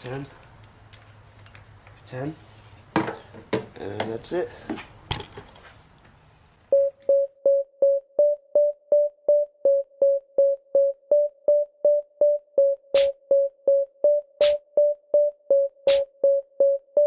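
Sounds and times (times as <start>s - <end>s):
repeating synth note: 9.6s - 17.0s.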